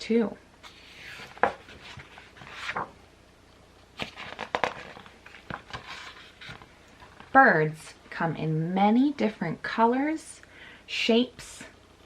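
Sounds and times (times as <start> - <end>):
paper page turning: 0.6 - 3.0, 4.0 - 7.3.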